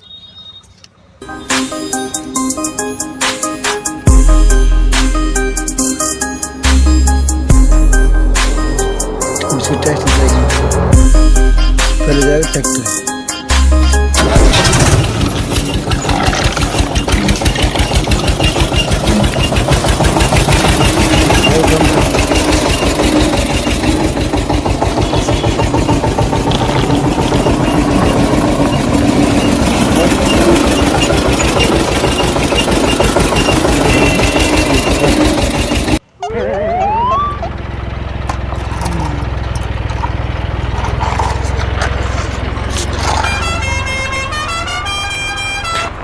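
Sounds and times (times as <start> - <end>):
small engine chugging: 14.1 - 43.4.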